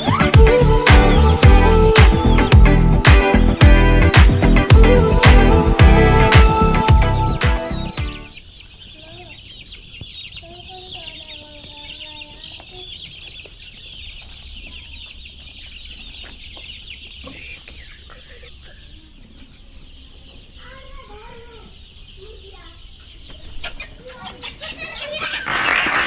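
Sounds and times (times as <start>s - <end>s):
dense high chirping: 0.0s - 8.5s
chickens clucking: 0.0s - 26.0s
drawn-out chicken calls: 4.8s - 26.0s.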